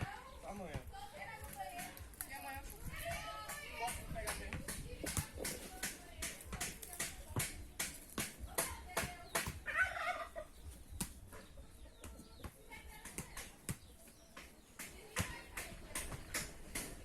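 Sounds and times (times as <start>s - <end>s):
poultry calling: 9.6s - 10.8s.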